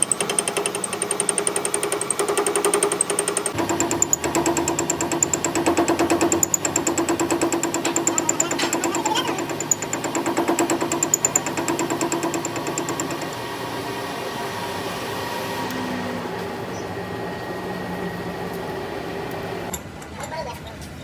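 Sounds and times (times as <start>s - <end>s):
metal lathe running: 0.0s - 19.8s.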